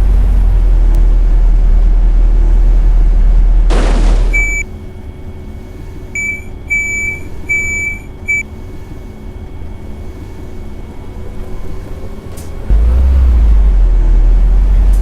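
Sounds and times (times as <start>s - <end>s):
low engine hum: 0.0s - 15.0s
bus door warning beeps: 4.3s - 4.7s, 6.2s - 8.5s.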